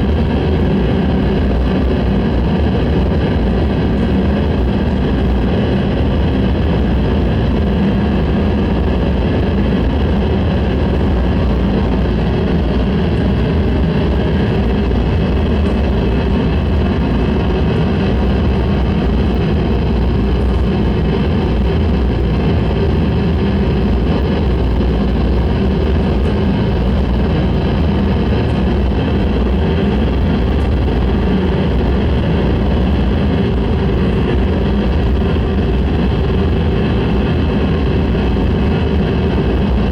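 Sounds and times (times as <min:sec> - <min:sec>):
dense rumbling noise music: 0:00.0 - 0:39.9.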